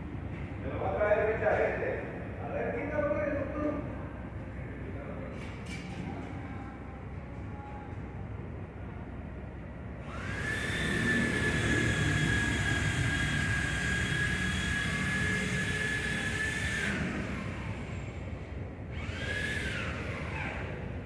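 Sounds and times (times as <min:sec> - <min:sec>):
power tool whining: 0:10.0 - 0:18.2, 0:18.9 - 0:20.9.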